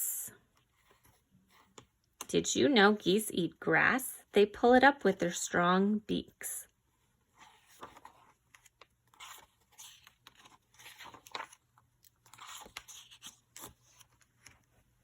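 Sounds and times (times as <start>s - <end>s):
book pages rustling and turning: 0.4s - 2.4s, 6.8s - 15.0s.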